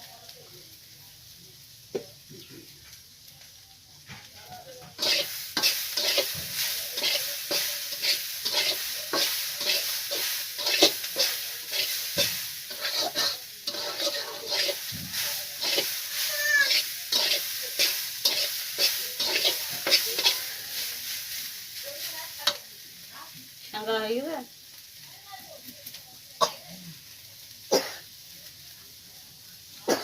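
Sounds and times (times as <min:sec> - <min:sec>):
food sizzling in hot oil: 0:00.0 - 0:30.0
utensil scraping a pan: 0:04.9 - 0:21.1.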